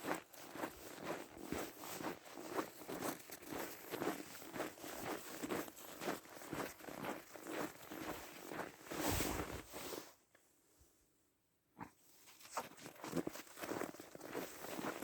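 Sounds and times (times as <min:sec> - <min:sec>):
footsteps walking: 0:00.0 - 0:10.0.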